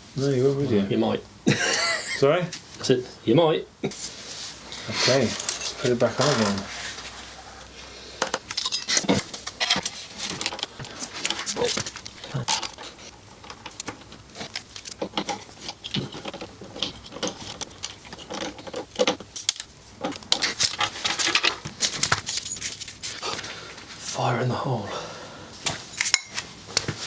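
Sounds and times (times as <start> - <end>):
metallic clinks of hand tools: 5.2 - 6.6.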